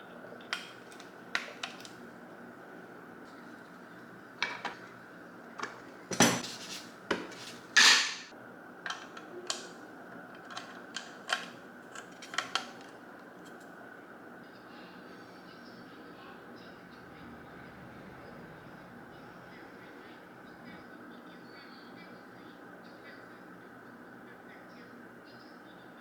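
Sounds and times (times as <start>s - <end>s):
metal tools clinking and knocking: 4.4s - 5.0s, 5.6s - 8.3s, 8.9s - 9.8s, 10.4s - 13.6s.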